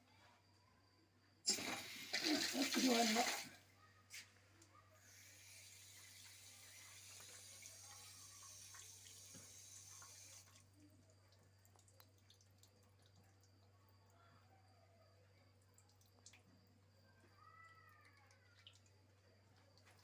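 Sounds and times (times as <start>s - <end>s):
water dripping: 1.5s - 3.6s, 4.6s - 14.6s, 15.3s - 20.0s
water running from a tap: 1.5s - 3.6s, 5.0s - 10.8s.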